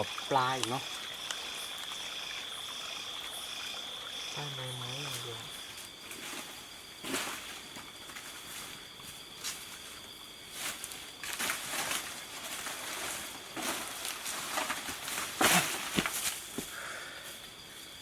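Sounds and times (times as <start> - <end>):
night insects chirring: 0.0 - 18.0
footsteps in leaves and mud: 5.9 - 16.6.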